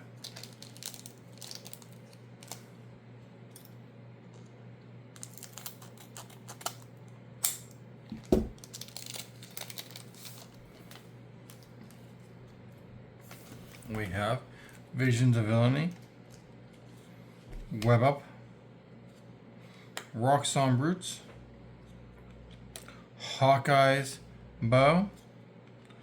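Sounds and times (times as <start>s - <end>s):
foil wrapper crinkling and tearing: 0.0s - 2.7s, 5.2s - 6.9s, 8.2s - 12.0s
low steady hum: 0.0s - 26.0s.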